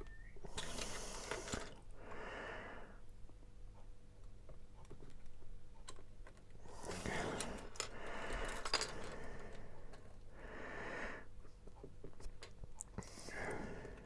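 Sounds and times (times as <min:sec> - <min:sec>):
plastic toy parts clicking: 0:07.0 - 0:10.0.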